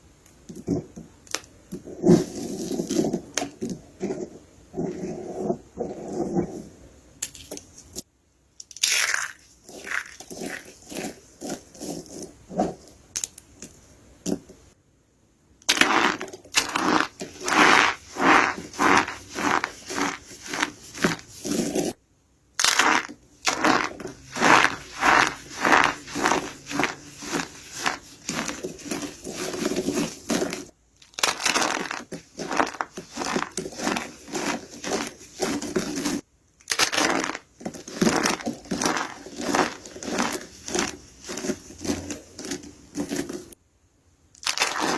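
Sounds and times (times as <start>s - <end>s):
soap crunching: 8.6s - 13.5s, 15.7s - 22.0s, 22.6s - 43.6s, 44.4s - 44.9s.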